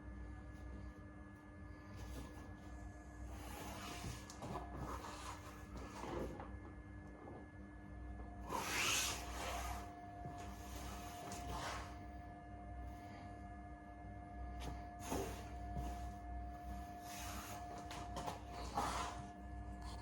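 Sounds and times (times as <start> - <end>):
steady electrical hum: 0.0 - 20.0
rubbing and scraping of sheets: 3.2 - 6.4, 8.4 - 12.2, 14.6 - 20.0.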